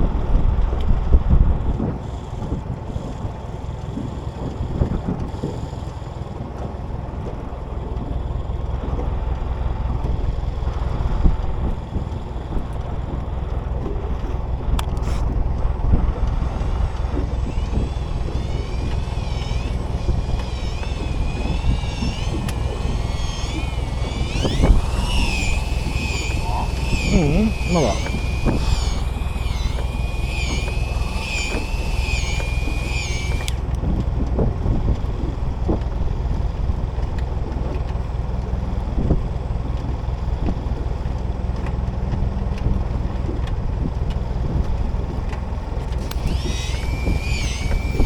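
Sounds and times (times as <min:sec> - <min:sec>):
sharp click: 0:17.1 - 0:33.7.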